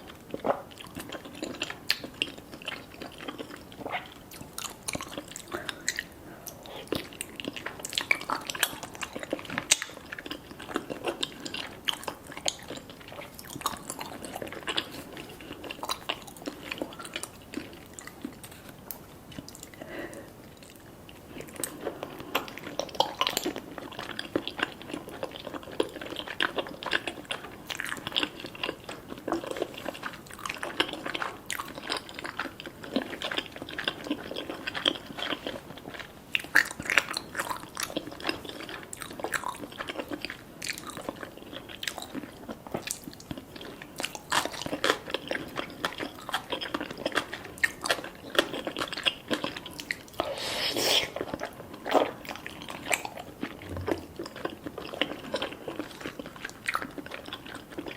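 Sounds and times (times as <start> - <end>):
close-miked chewing: 0.0 - 57.9
food crunch: 20.6 - 50.3, 51.0 - 57.9.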